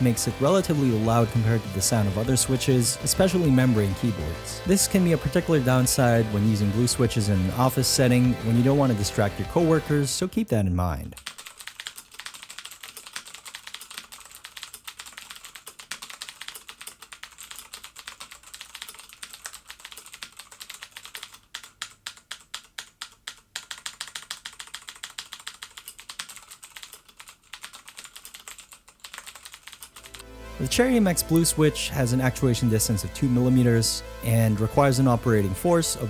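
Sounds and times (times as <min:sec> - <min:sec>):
clicky mechanical keyboard typing: 0:11.1 - 0:30.2.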